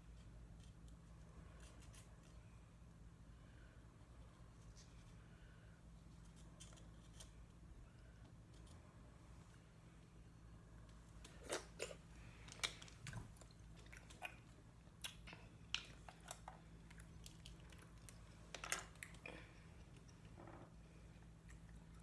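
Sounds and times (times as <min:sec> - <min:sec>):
person chewing crunchy food: 0:11.2 - 0:20.4.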